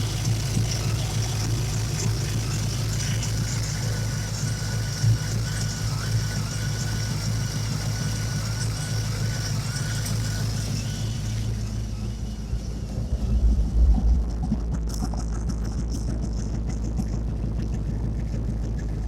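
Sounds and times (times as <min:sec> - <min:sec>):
faint high whine: 0:00.0 - 0:15.0
engine idling: 0:00.0 - 0:19.0.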